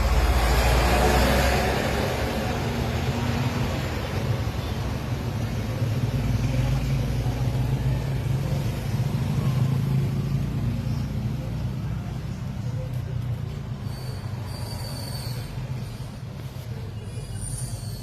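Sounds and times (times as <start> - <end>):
moving vehicle rumble: 0.0 - 18.0.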